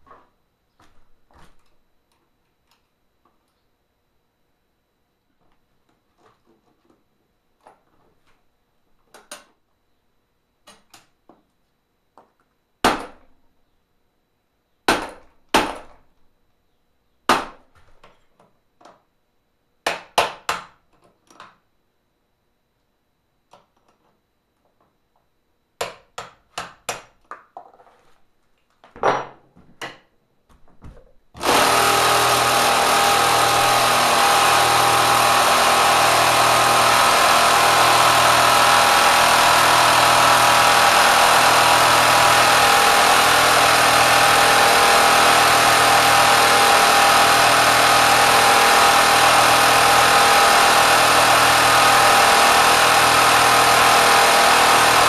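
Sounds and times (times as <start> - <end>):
electric motor running: 31.4 - 55.0.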